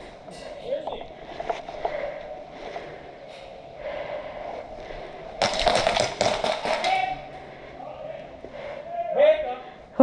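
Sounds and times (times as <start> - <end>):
light movement: 0.0 - 5.4
quiet breathing: 0.0 - 5.6, 7.1 - 10.0
airsoft gun firing: 5.4 - 7.1.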